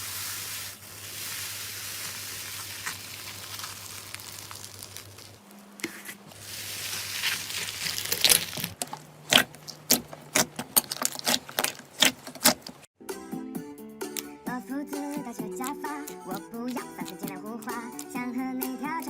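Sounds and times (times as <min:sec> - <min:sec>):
slime crackling hiss: 0:00.0 - 0:05.5, 0:06.3 - 0:08.8.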